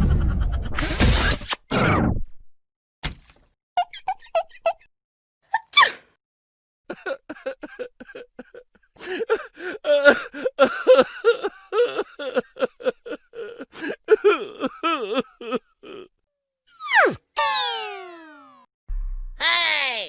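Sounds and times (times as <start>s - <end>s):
person laughing: 6.9s - 16.1s.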